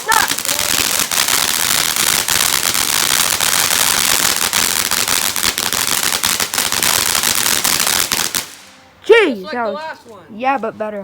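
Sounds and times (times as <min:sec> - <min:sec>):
rapid crackling pops: 0:00.0 - 0:08.7
firework hissing: 0:00.0 - 0:08.8.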